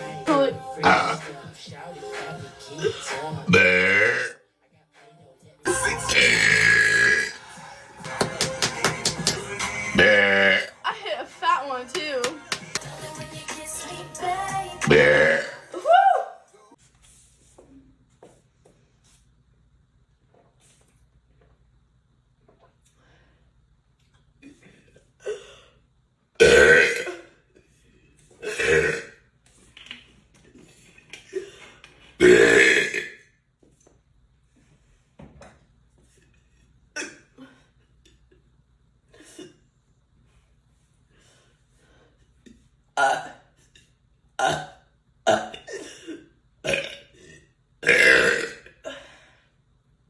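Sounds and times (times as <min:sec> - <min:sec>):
woman burping: 0:00.3 - 0:01.2, 0:02.8 - 0:04.4, 0:05.7 - 0:07.4, 0:09.9 - 0:10.9, 0:14.8 - 0:15.8, 0:26.4 - 0:27.4, 0:28.4 - 0:29.2, 0:32.2 - 0:33.2, 0:37.0 - 0:37.5, 0:43.0 - 0:43.5, 0:44.4 - 0:49.1.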